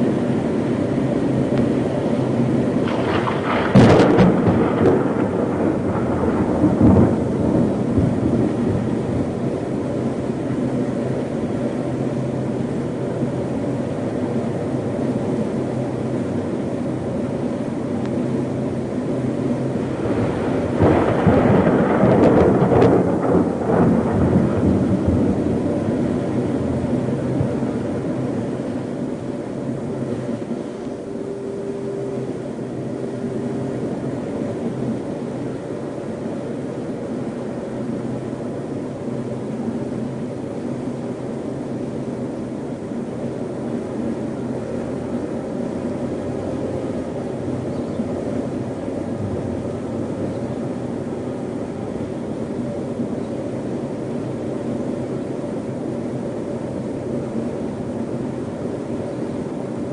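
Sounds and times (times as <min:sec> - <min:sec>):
rain: 0:00.0 - 0:59.9
wind: 0:00.0 - 0:59.9
rumbling thunder: 0:01.3 - 0:11.3, 0:19.3 - 0:29.3, 0:47.0 - 0:52.1
thunder cracks: 0:02.8 - 0:09.5, 0:20.0 - 0:28.6.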